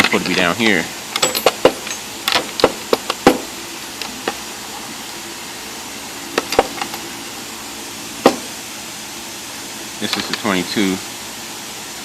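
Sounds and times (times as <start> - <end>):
steady hiss: 0.0 - 12.0
metal sockets clicking and knocking: 1.2 - 4.4, 6.4 - 7.0.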